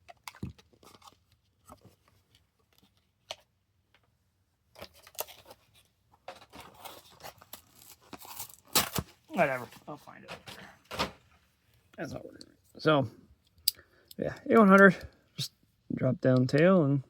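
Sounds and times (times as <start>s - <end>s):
plastic packaging clicks and rustling: 0.0s - 4.1s, 4.7s - 9.2s.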